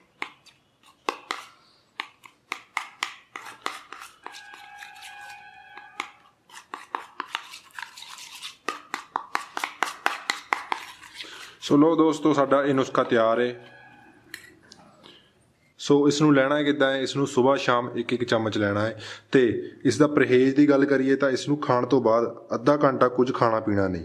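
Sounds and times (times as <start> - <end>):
ringing tone: 13.4 - 14.6.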